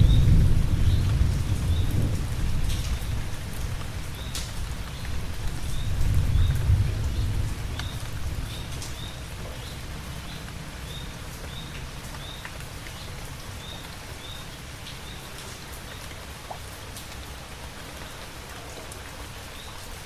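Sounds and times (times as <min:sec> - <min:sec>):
steady rain: 0:00.0 - 0:20.0.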